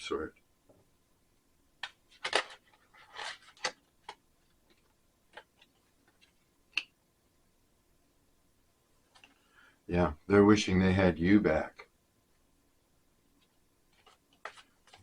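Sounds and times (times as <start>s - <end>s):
cards clicking and sliding: 1.8s - 6.9s, 13.9s - 15.0s.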